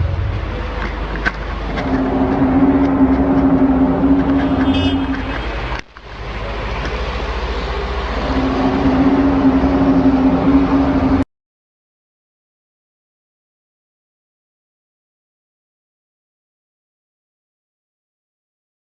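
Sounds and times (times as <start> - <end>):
deep rumble: 0.0 - 11.3
low droning hum: 0.0 - 11.3.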